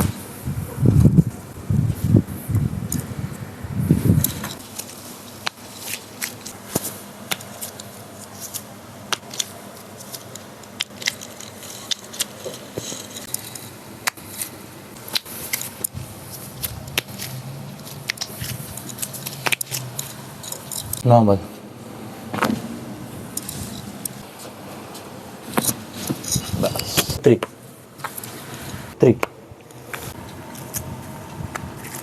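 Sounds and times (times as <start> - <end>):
rustling of body and clothing: 3.8 - 29.0, 29.7 - 32.0
joints cracking: 4.2 - 21.0, 23.3 - 27.2.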